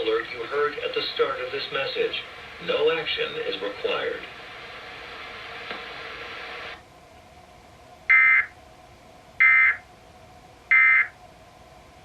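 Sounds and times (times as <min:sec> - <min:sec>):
steady hiss: 0:00.0 - 0:12.0
digital data tone bursts: 0:08.1 - 0:08.5, 0:09.4 - 0:09.8, 0:10.7 - 0:11.1.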